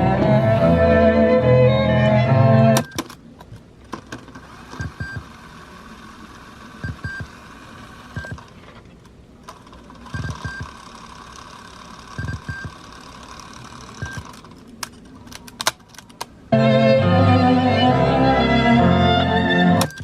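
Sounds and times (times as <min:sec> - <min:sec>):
sharp clicks: 0:12.2 - 0:12.8
tape hiss: 0:16.2 - 0:20.0.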